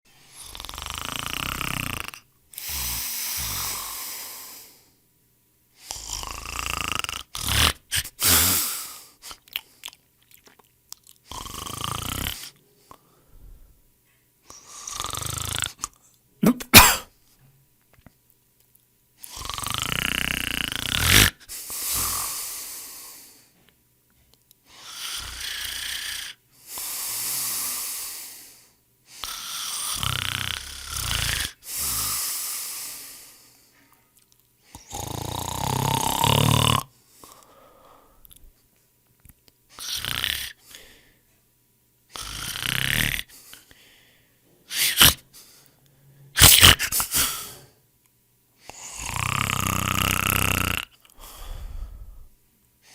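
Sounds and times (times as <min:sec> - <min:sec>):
people snoring: 0:00.3 - 0:04.8, 0:05.8 - 0:09.1, 0:11.3 - 0:12.6, 0:14.5 - 0:15.8, 0:19.2 - 0:23.3, 0:24.8 - 0:28.5, 0:29.2 - 0:33.4, 0:34.7 - 0:36.9, 0:39.8 - 0:40.9, 0:42.1 - 0:43.4, 0:48.7 - 0:52.2.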